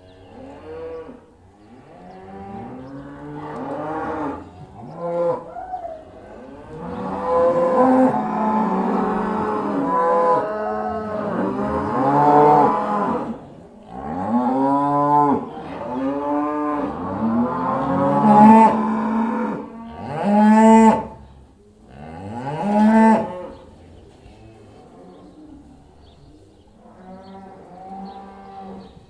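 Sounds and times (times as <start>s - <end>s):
cows mooing: 0.2s - 21.3s.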